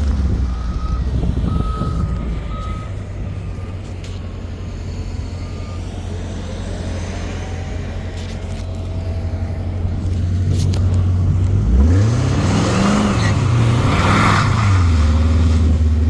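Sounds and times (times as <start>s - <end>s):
backup alarm beeping: 0.0s - 4.6s
diesel engine running: 0.0s - 16.0s.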